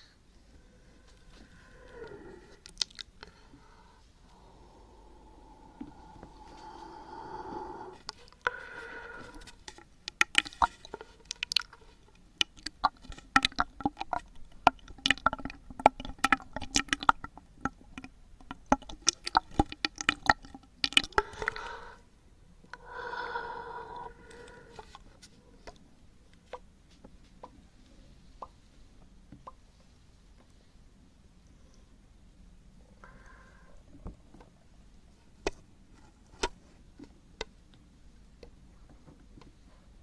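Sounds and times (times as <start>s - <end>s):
tongue clicks and lip smacks: 2.6s - 3.3s, 10.1s - 11.8s, 12.4s - 21.7s.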